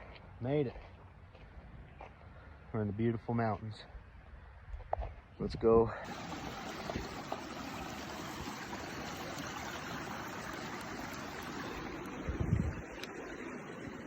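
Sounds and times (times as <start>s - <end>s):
flowing water rushing: 6.0s - 14.0s.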